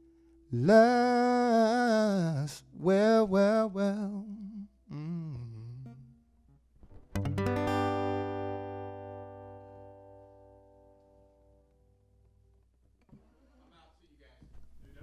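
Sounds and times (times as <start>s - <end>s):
person singing: 0.5s - 6.1s
guitar strumming a chord: 7.2s - 12.1s.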